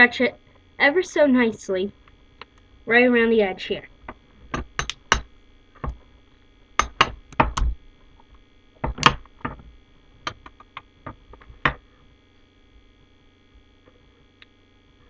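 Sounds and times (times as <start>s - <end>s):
sharp clicks and knocks: 4.0s - 6.0s, 6.8s - 11.8s.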